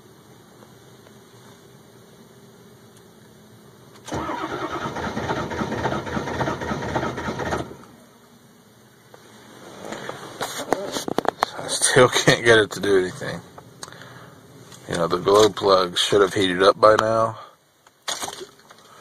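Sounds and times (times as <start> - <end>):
engine starter cranking: 4.0 - 7.9.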